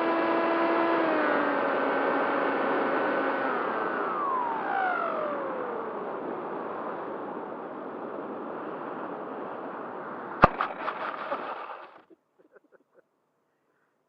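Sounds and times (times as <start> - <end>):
air rushing past camera: 10.4 - 12.0
model plane hitting ground: 10.4 - 12.1
plane skidding bumps: 10.4 - 12.8.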